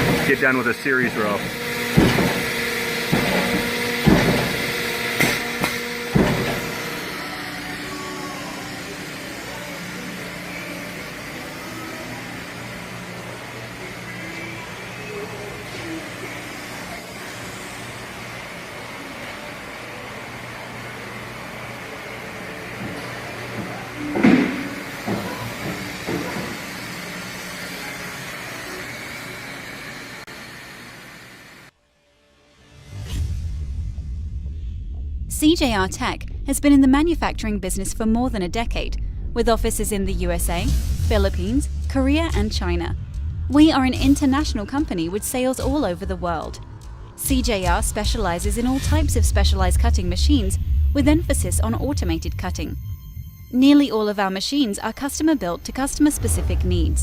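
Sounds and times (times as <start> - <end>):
press cutting strokes: 0.0 - 31.7
press motor hum: 0.0 - 31.7.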